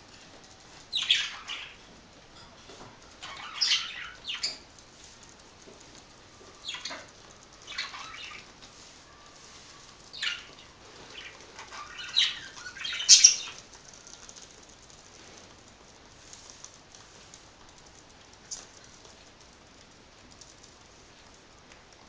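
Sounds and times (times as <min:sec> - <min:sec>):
budgies fluttering wings: 0:00.9 - 0:01.8, 0:03.2 - 0:04.7, 0:06.6 - 0:15.5.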